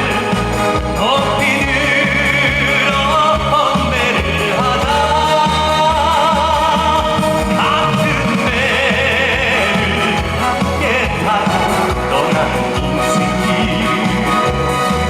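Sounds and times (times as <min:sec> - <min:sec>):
live band music: 0:00.0 - 0:15.0.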